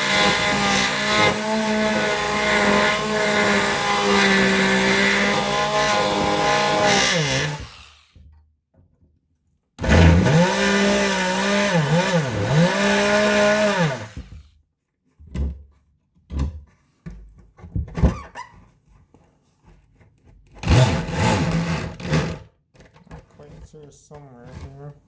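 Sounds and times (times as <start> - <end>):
oscillating saw cutting plywood: 0.0 - 8.1, 9.8 - 14.4.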